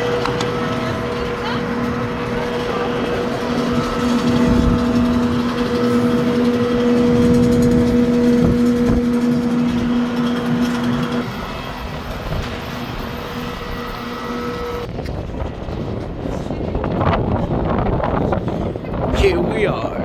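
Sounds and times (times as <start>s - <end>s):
machine hum: 0.0s - 11.7s
loud rumbling machine: 0.0s - 20.0s.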